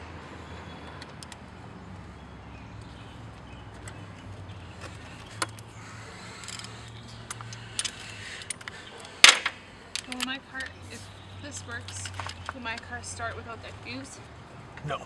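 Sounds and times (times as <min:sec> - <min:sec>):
metallic clicks of hand work: 0:06.3 - 0:10.8.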